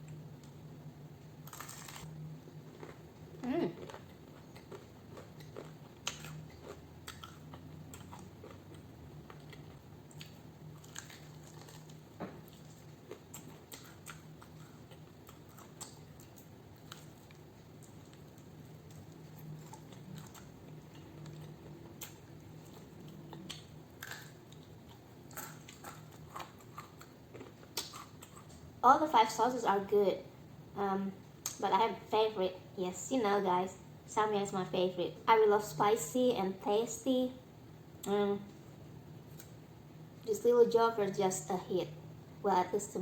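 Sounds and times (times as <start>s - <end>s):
chewing crunchy food: 1.4s - 28.7s.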